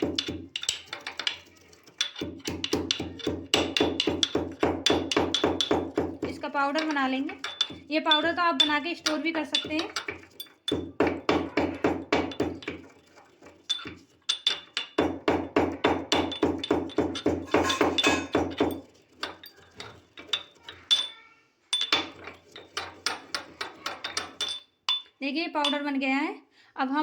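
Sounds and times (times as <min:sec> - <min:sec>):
pestle pounding in a mortar: 0:00.0 - 0:21.0.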